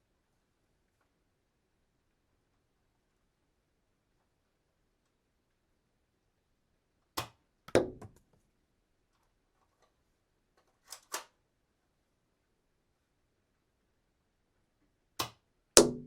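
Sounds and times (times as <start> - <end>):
dart gun shot snap: 15.2 - 16.0.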